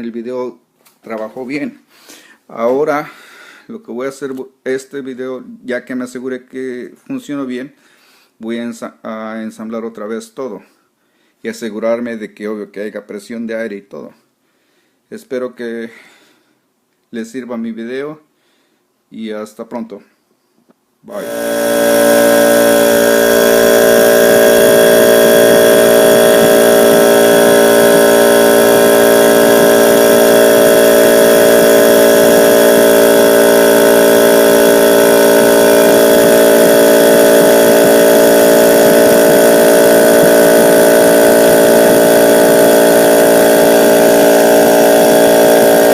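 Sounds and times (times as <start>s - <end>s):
air compressor running: 21.1s - 45.9s.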